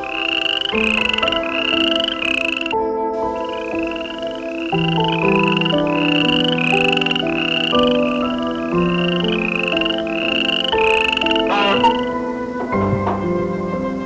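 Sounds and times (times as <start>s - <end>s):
background music of held notes: 0.0s - 14.0s
animal chirping: 9.0s - 12.1s.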